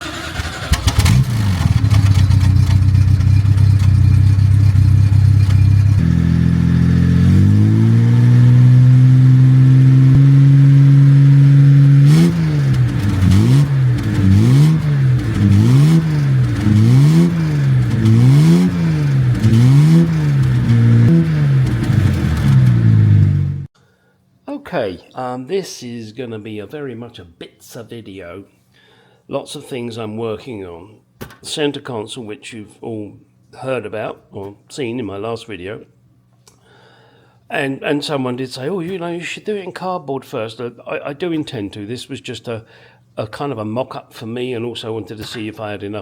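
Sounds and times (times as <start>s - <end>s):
car engine revving: 0.0s - 23.7s.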